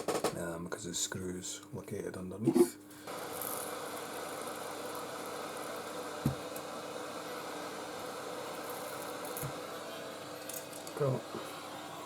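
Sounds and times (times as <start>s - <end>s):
heat gun blowing air: 3.1s - 11.8s.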